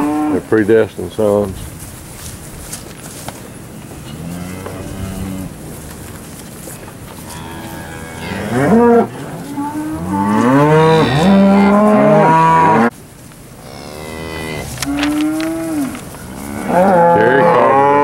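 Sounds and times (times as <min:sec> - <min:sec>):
cattle mooing: 0:04.0 - 0:05.6, 0:07.2 - 0:12.9, 0:13.6 - 0:18.0.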